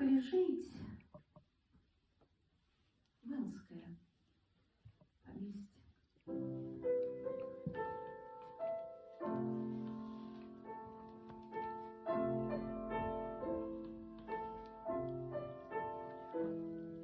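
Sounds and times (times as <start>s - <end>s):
slow piano chords: 6.3s - 17.0s.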